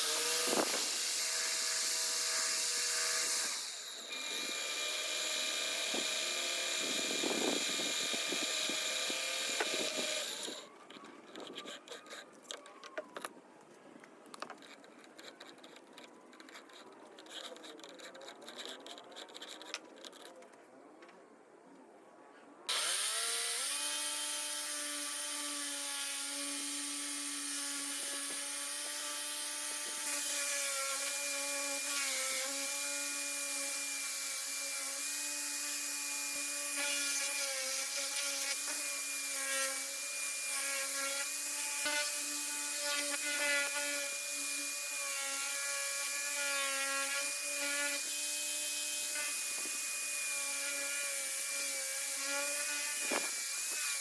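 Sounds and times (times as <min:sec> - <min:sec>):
electric drill whining: 0:00.0 - 0:13.3, 0:22.7 - 0:54.0
tool rubbing spinning wood: 0:07.2 - 0:12.7, 0:14.4 - 0:20.4.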